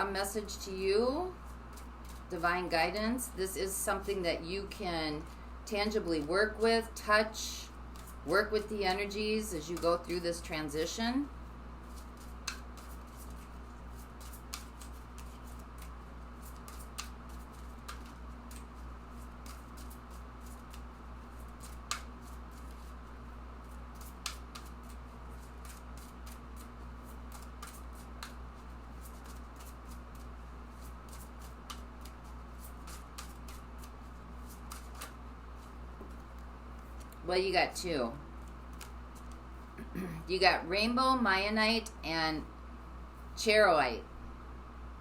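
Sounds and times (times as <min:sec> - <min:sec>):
steady low hum: 0:00.0 - 0:45.0
cards being shuffled: 0:01.5 - 0:02.4, 0:07.9 - 0:08.2, 0:11.8 - 0:37.2, 0:38.4 - 0:39.5.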